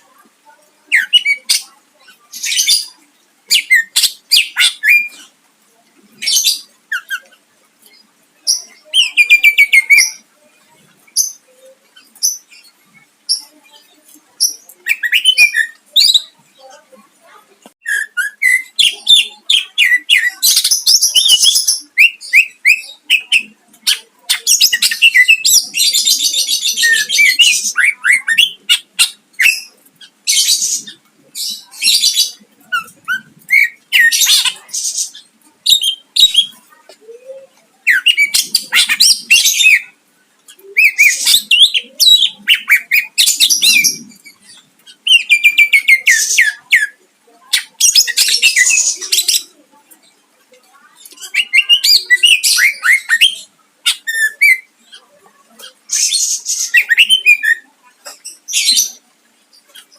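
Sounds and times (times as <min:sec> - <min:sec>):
bird singing chirps and whistles: 0:14.8 - 0:16.3, 0:17.8 - 0:23.5, 0:37.9 - 0:40.0, 0:51.3 - 0:54.7, 0:56.0 - 0:57.6.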